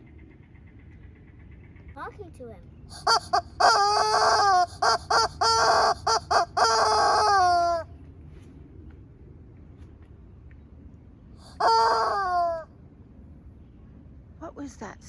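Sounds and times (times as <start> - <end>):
rubber chicken toy squeaking: 2.9 - 7.8.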